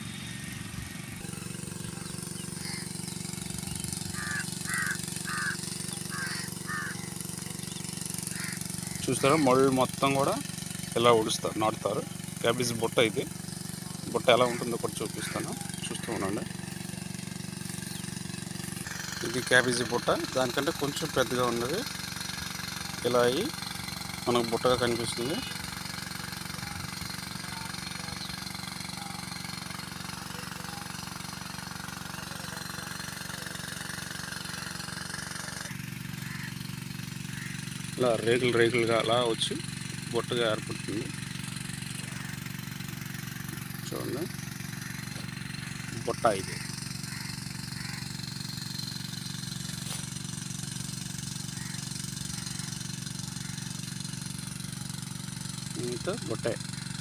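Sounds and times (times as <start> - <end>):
engine running steadily: 0.0 - 57.0.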